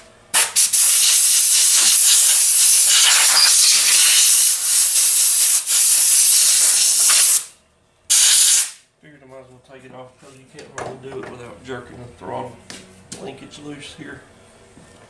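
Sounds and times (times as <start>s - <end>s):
loud steady hiss: 0.4s - 7.5s, 8.1s - 8.8s.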